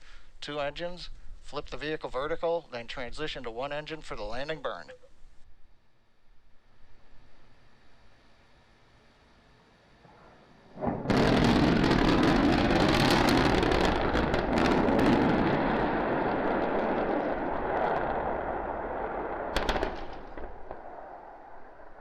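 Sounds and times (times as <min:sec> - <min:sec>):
crackling rocket engine roar: 0:10.0 - 0:22.0
sharp cracks: 0:10.8 - 0:22.0.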